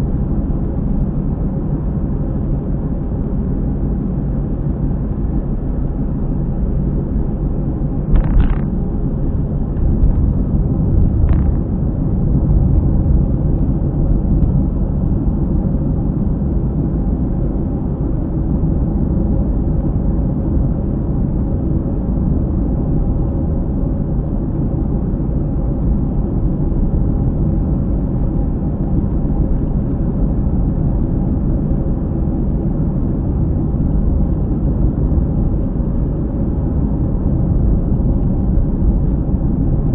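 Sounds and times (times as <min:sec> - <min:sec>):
low wheel drone of moving car: 0:00.0 - 0:39.9.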